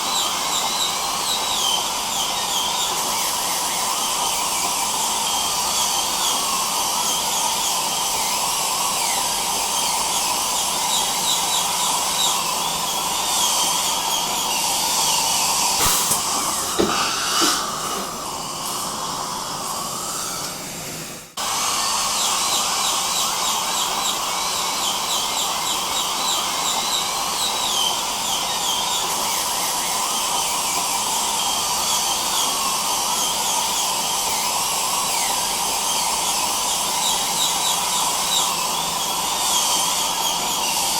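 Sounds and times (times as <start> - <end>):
dental drill whine: 0.0 - 40.9
suction hiss: 14.7 - 20.5.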